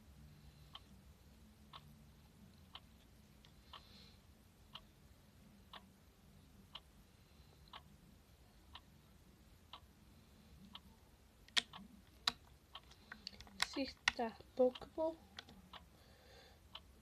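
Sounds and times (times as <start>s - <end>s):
clock ticking: 0.1s - 3.9s, 4.5s - 16.0s, 16.6s - 17.0s
sharp clicks: 11.5s - 14.3s.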